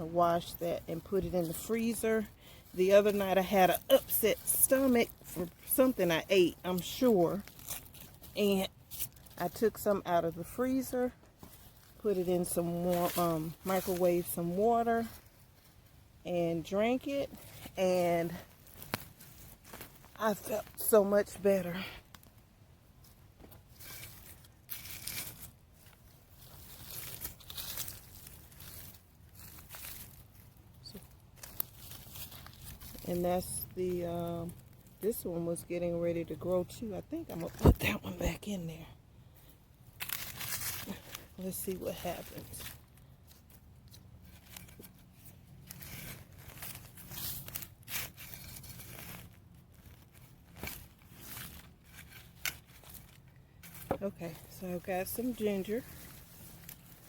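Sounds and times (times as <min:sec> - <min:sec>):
rustling and crunching of soil: 0:00.0 - 0:57.0
sharp tearing crackles: 0:06.7 - 0:09.4, 0:23.7 - 0:33.6, 0:39.9 - 0:54.0, 0:55.1 - 0:57.0.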